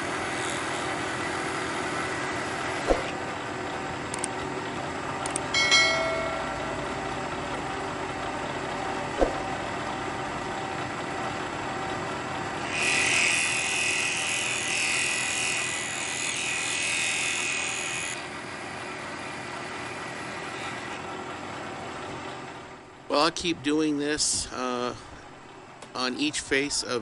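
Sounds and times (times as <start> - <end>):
milling machine running: 0.0 - 20.8
end mill cutting aluminum: 12.4 - 21.0.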